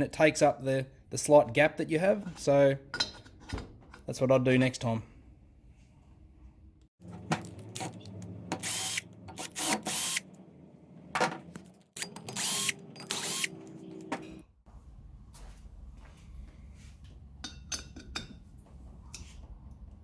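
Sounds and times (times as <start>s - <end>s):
power tool bursts: 8.6s - 10.3s, 12.0s - 13.6s.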